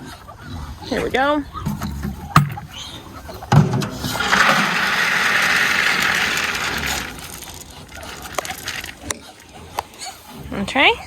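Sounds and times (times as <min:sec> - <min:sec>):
bucket knock: 0:02.4 - 0:02.8
water pouring from bucket: 0:04.2 - 0:09.1.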